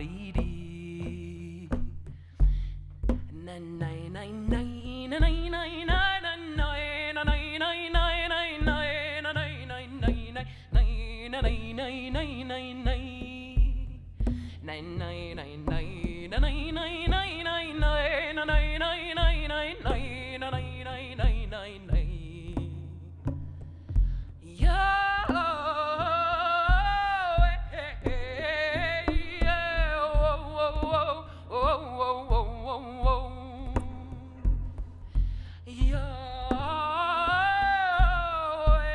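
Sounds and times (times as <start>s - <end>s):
steady low beat: 26.4s - 36.6s.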